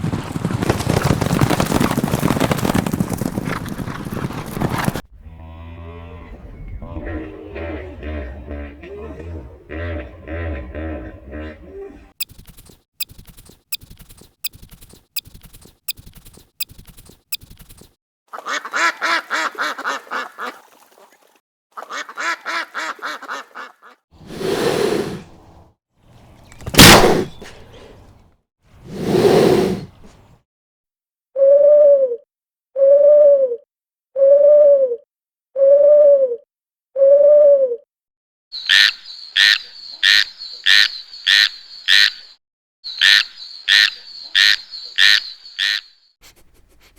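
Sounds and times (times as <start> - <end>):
buzzy animal calls: 5.2 - 12.2
loud noisy animal blasts: 26.6 - 27.8
sharp high animal calls: 38.6 - 42.3, 42.9 - 46.0.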